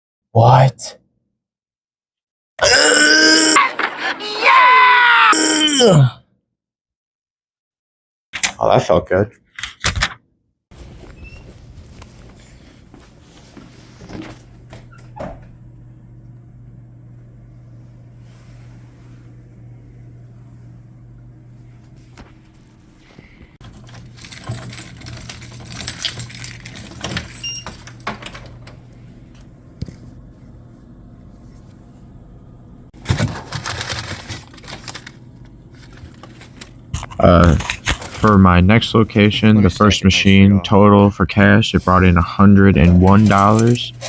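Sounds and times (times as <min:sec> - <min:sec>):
steady low hum: 0:10.8 - 0:44.0
keys jangling and rattling: 0:23.6 - 0:28.9, 0:42.8 - 0:44.0.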